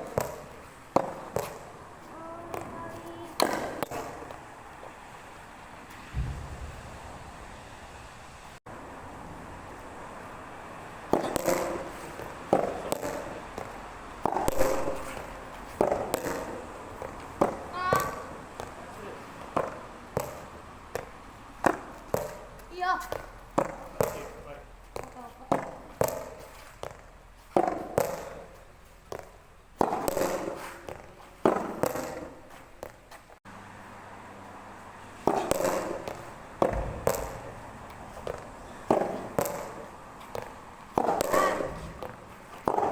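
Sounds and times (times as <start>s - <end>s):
tennis balls struck by rackets: 0.0s - 7.4s, 10.8s - 33.3s, 35.1s - 42.9s
low hum: 5.9s - 9.4s
wind rushing: 5.9s - 9.4s
rackets striking rubber ball: 11.1s - 18.7s, 35.3s - 42.9s.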